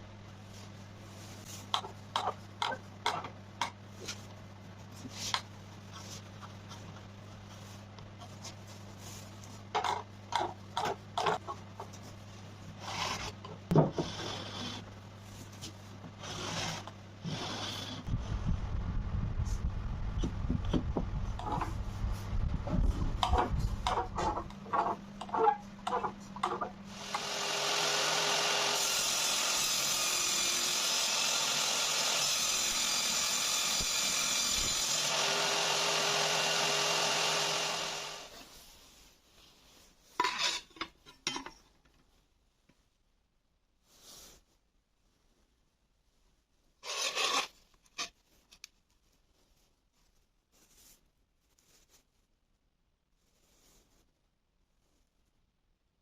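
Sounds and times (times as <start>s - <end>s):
low steady hum: 0.0s - 27.2s.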